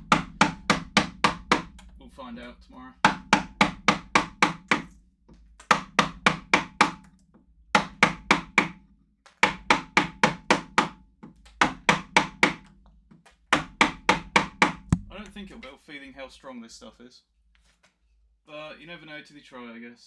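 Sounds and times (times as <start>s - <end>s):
chisel struck into hard wood: 0.0s - 1.8s, 3.0s - 4.9s, 5.6s - 7.0s, 7.8s - 8.8s, 9.4s - 11.0s, 11.6s - 12.7s, 13.5s - 15.6s.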